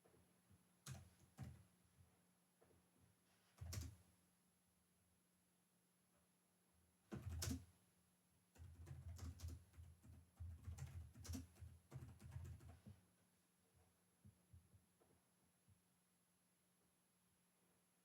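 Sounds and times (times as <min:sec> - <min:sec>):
typing on computer keyboard: 0:00.8 - 0:01.7, 0:03.6 - 0:04.0, 0:07.1 - 0:07.7, 0:08.6 - 0:12.9.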